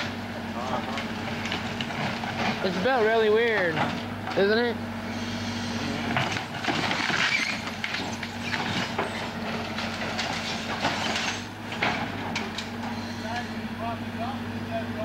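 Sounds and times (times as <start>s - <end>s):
demolition machine engine hum: 0.0s - 15.0s
wood cracking and crunching: 6.1s - 12.7s.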